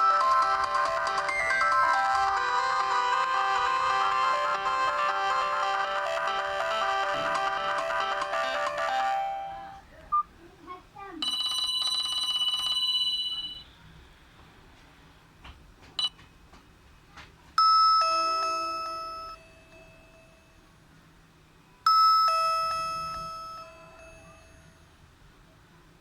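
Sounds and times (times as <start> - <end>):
two-note ding-dong phone tone: 0.0 - 9.8.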